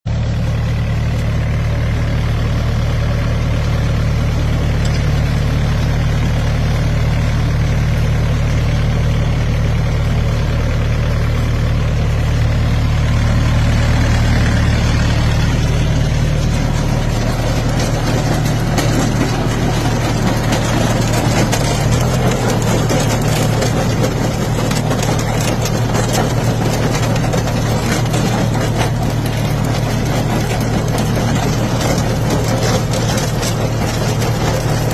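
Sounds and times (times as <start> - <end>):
machine engine humming: 0.1 - 34.9
mechanical rattling and clatter: 14.0 - 34.9.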